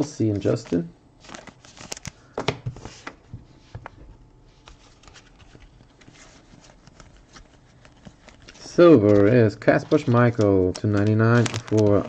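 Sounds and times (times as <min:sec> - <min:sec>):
trading cards clicking and rustling: 0:00.4 - 0:03.2, 0:04.6 - 0:12.0.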